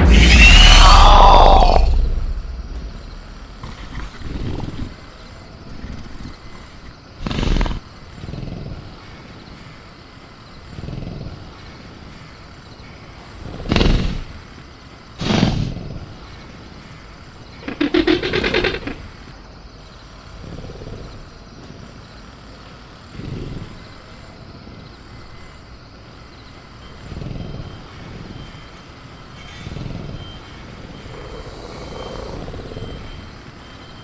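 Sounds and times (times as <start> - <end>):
agitated animal bursts: 0.0 - 9.1, 13.4 - 14.5, 17.6 - 19.3, 30.9 - 33.5
raptor growling softly: 0.0 - 9.3, 10.6 - 12.3, 20.2 - 24.6, 29.6 - 33.8
crickets chirping: 0.0 - 34.0.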